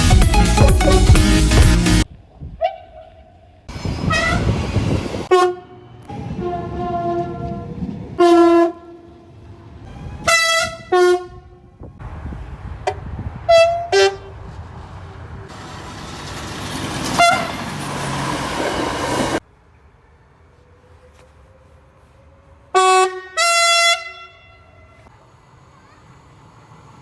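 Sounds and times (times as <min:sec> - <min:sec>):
train rushing past: 0:03.7 - 0:19.5, 0:25.2 - 0:27.0
train horn blasts: 0:03.8 - 0:09.4, 0:10.0 - 0:11.8, 0:12.8 - 0:14.4, 0:17.1 - 0:17.7, 0:22.7 - 0:25.1.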